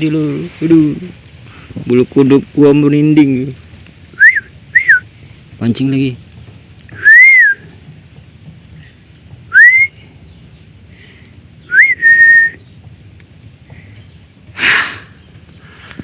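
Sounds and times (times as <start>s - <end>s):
short hiss: 0.0s - 10.2s, 13.6s - 16.0s
person whistling: 4.2s - 5.0s, 7.0s - 7.6s, 9.5s - 9.9s, 11.7s - 12.6s.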